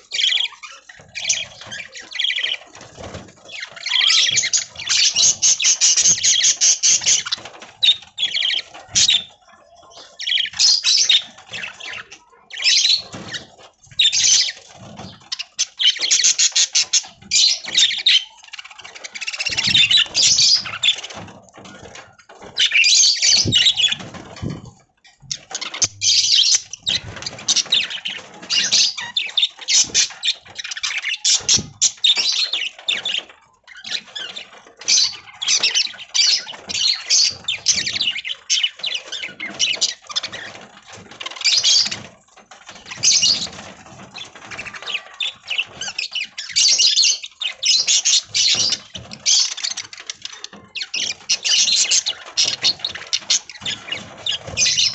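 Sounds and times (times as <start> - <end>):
budgies chirping: 0.0 - 54.9.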